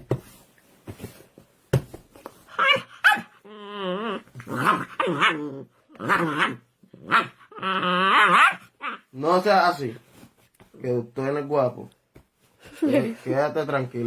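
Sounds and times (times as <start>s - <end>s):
dog barking and growling: 2.5s - 9.2s.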